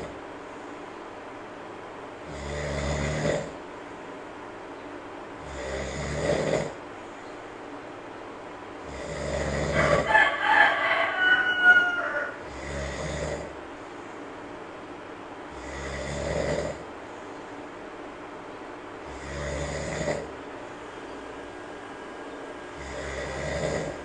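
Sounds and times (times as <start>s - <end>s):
monkey snoring: 2.2s - 3.6s, 5.4s - 6.8s, 8.8s - 10.1s, 12.4s - 13.6s, 15.5s - 16.9s, 19.0s - 20.4s, 22.7s - 24.0s.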